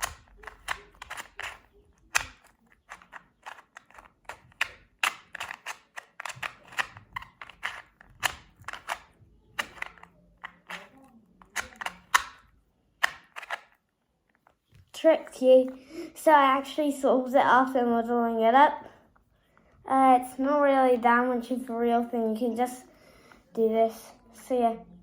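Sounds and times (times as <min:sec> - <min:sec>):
puzzle cube clicking as twisted: 0:00.0 - 0:14.6.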